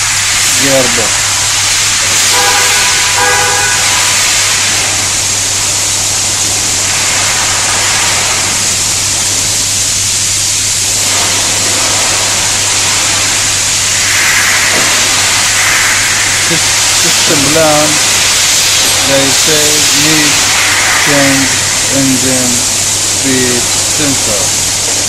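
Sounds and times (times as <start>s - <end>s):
loud steady hiss: 0.0s - 25.0s
brief horn-like tone: 2.3s - 4.0s.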